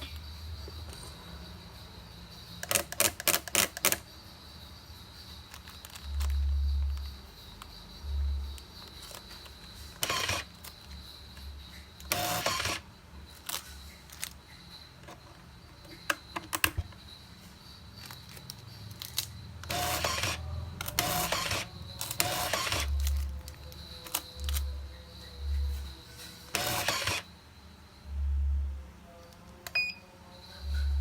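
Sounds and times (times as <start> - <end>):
sharp clicks: 8.8 - 10.8, 11.4 - 12.8, 18.0 - 24.7, 26.5 - 27.3
tape dispenser whirring: 9.0 - 10.7, 12.0 - 12.8, 18.3 - 24.7, 26.5 - 27.3.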